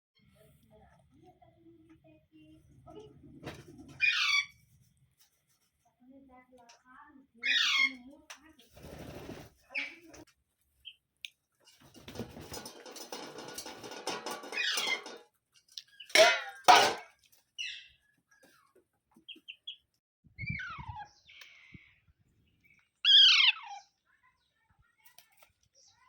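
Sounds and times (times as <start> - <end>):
parrot squawking and calling: 4.0 - 4.6, 7.4 - 8.0, 23.0 - 23.9.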